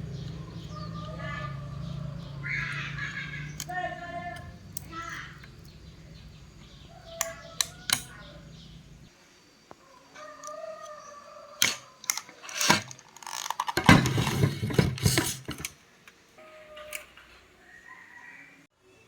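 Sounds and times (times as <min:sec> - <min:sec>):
small hard objects clattering: 0:11.6 - 0:15.8.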